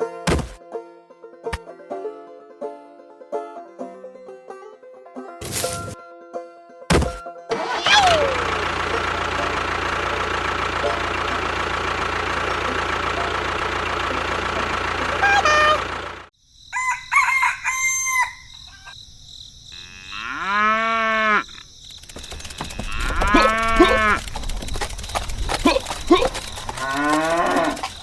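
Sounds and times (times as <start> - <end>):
steady machine noise: 8.0 - 16.3, 21.8 - 28.0.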